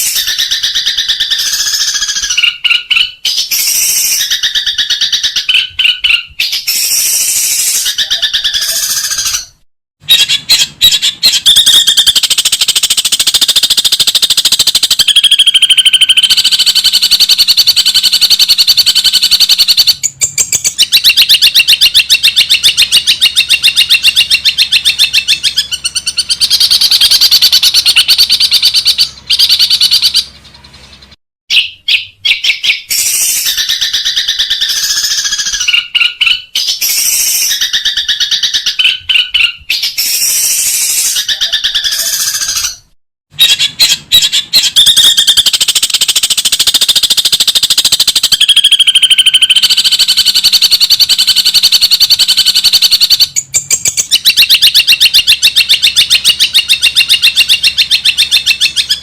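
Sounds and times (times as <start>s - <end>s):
harsh bird chattering: 0.0s - 59.0s.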